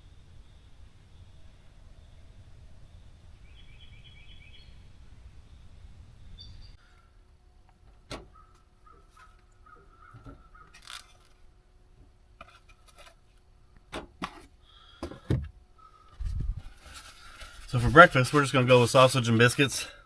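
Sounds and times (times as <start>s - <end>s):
faint bird calls: 0.0s - 7.2s, 8.3s - 11.0s, 15.7s - 16.2s.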